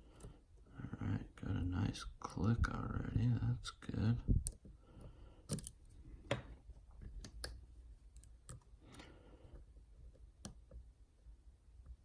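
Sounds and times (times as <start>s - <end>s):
lock pick clicking pins: 5.5s - 5.8s.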